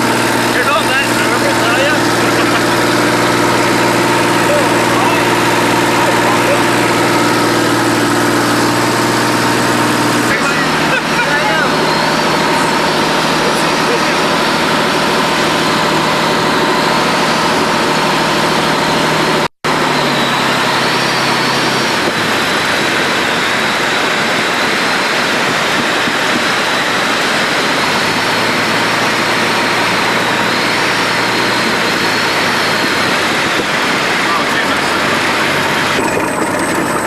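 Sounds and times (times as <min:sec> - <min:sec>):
light aircraft engine drone: 0:00.0 - 0:37.0.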